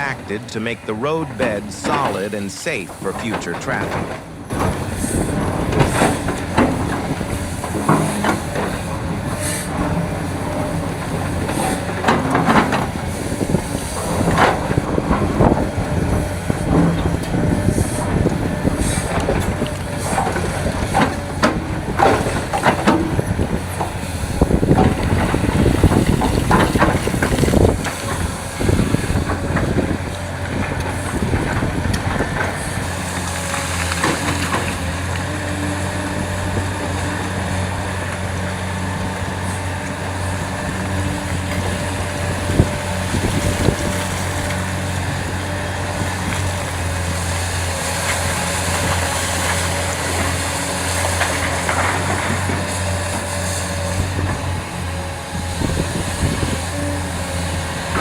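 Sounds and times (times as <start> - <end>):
diesel excavator engine drone: 0.0 - 58.0.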